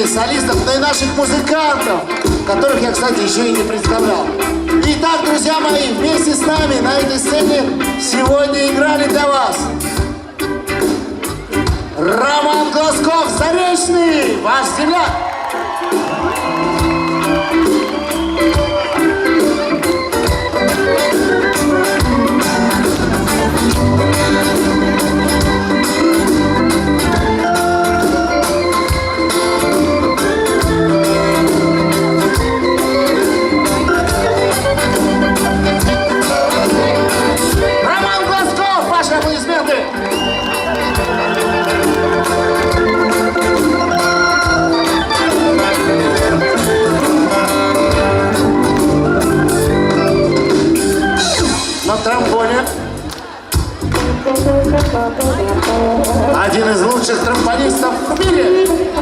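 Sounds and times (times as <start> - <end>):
steady drums: 0.0 - 59.0
organ-toned keyboard chords: 15.9 - 59.0.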